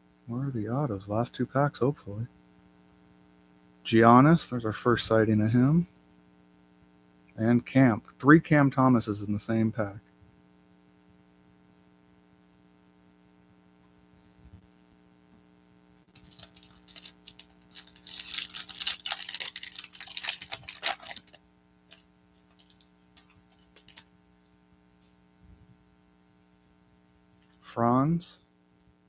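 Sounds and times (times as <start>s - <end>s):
steady electrical hum: 0.0s - 29.0s
foil wrapper tearing and crinkling: 16.1s - 24.1s.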